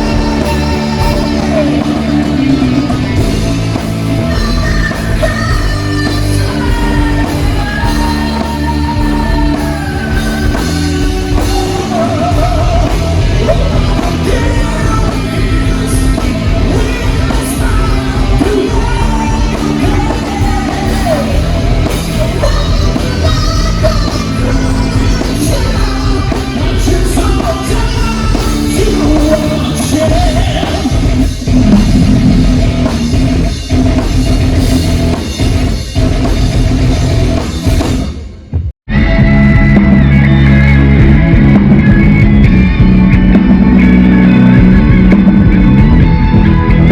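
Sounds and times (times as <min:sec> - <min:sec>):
person singing: 0:00.0 - 0:03.5, 0:04.2 - 0:31.3
rock music: 0:00.0 - 0:46.9.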